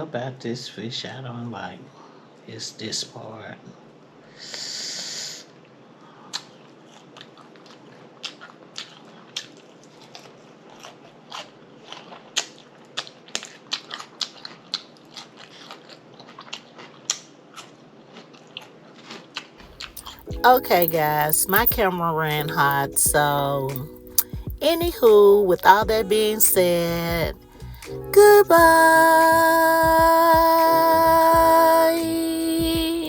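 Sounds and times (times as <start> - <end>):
chewing and mouth smacking: 6.2 - 28.4.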